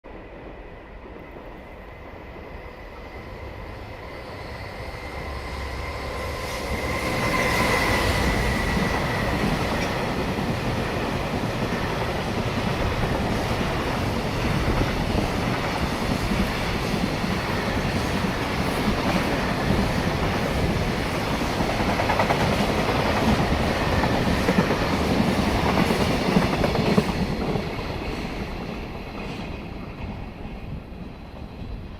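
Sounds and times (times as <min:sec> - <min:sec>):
electric locomotive high tone: 0:01.9 - 0:11.0.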